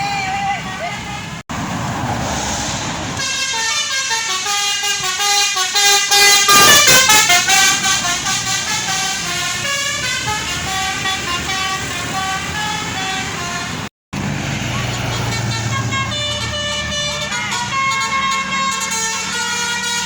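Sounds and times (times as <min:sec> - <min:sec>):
musical air horn tune: 0:03.2 - 0:13.9, 0:15.1 - 0:20.0.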